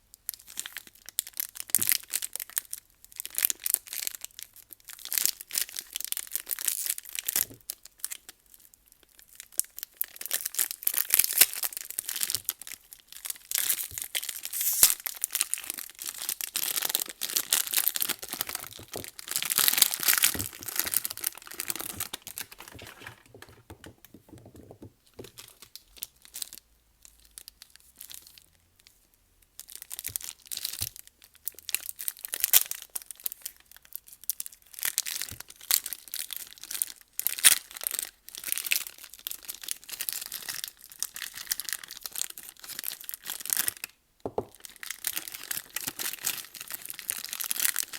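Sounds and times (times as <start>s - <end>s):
packaging crinkling and tearing: 9.9s - 28.5s, 29.6s - 43.9s, 44.5s - 47.9s.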